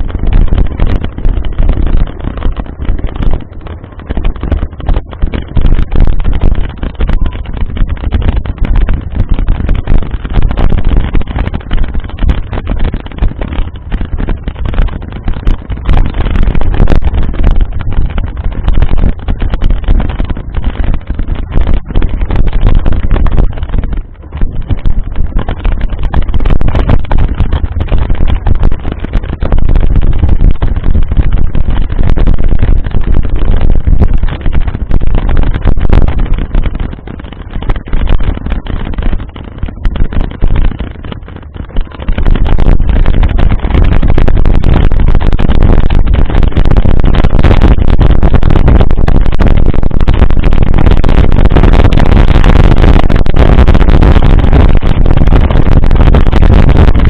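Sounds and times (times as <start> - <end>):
wind buffeting microphone: 0.0 - 57.0.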